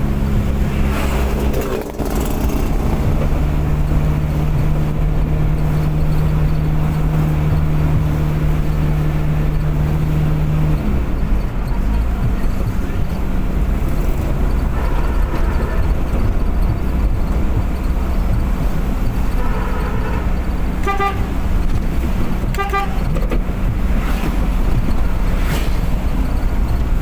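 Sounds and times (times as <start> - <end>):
car engine and road drone: 0.0 - 27.0
vehicle horn honking: 14.6 - 16.2, 19.3 - 21.6, 22.4 - 23.2.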